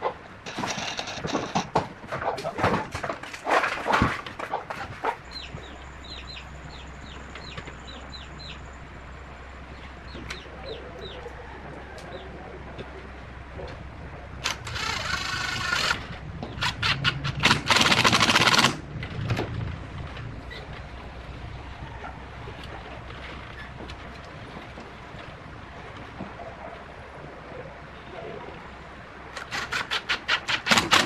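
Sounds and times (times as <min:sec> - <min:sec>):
chicks peeping: 0:04.8 - 0:08.6
loud noisy bursts: 0:14.4 - 0:18.9.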